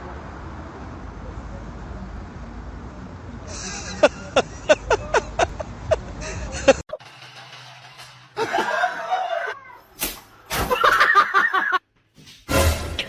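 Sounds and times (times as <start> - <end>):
people laughing and talking: 3.5 - 7.0
sharp slap-like knock: 10.0 - 10.7.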